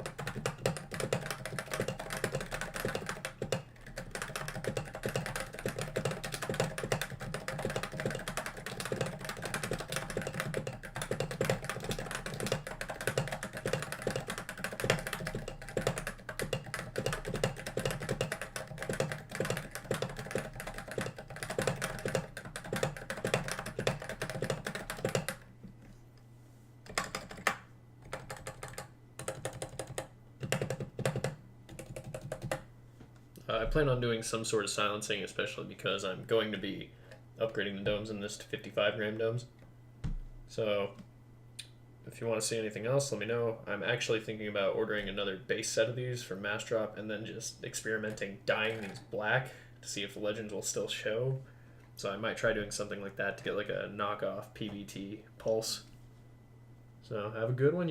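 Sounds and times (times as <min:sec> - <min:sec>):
keyboard typing: 0:00.0 - 0:25.5, 0:26.8 - 0:32.7, 0:48.1 - 0:49.1.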